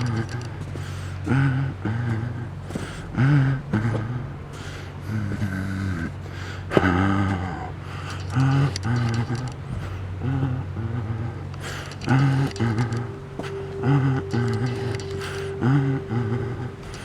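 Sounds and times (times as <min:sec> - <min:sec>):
steady low rumble: 0:12.0 - 0:17.0.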